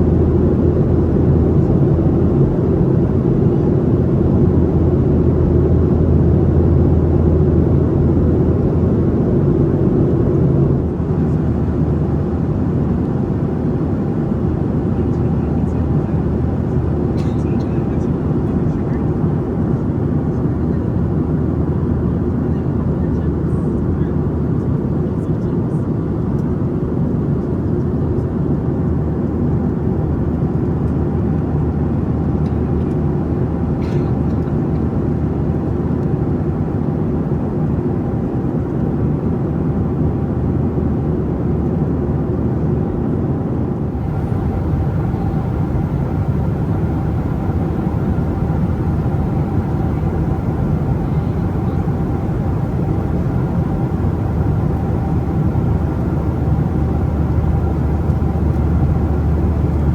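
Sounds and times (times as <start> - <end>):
airflow over fuselage: 0.0 - 19.6, 42.5 - 59.9
aircraft engines rumbling: 0.0 - 59.9.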